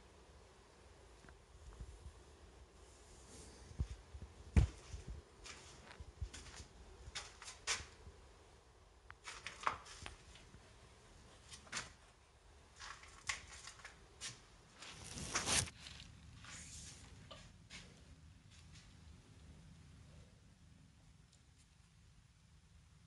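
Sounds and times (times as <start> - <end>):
rustling: 9.2 - 19.5.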